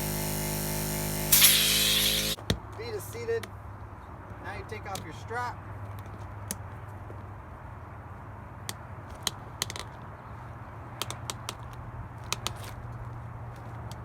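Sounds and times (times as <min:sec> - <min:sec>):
air compressor running: 0:00.0 - 0:02.4.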